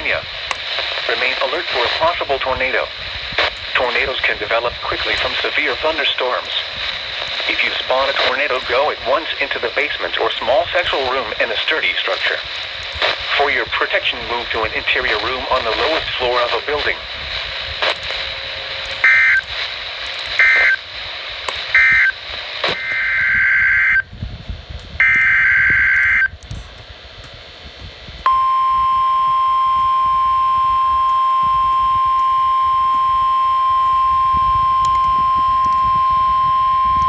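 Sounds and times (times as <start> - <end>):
steady warning alarm tone: 18.2 - 19.5, 20.3 - 20.9, 21.7 - 24.1, 25.0 - 26.4, 28.2 - 37.0
buzzy digital data bursts: 25.0 - 26.4.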